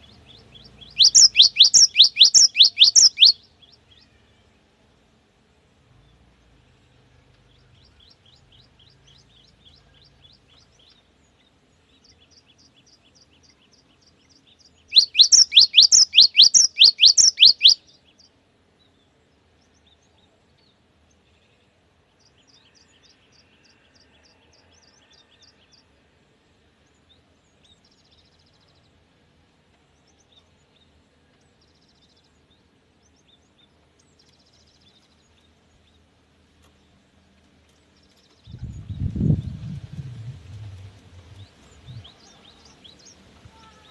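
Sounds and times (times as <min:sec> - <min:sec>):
bird whistled song: 0:00.3 - 0:03.5, 0:14.9 - 0:17.9
bird rapid chirping: 0:00.6 - 0:03.4, 0:14.9 - 0:17.8.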